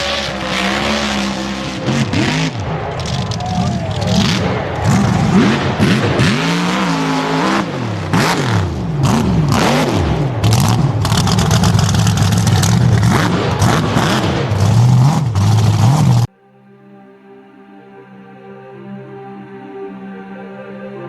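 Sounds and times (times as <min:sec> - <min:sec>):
off-road vehicle engine revving: 0:00.0 - 0:16.3.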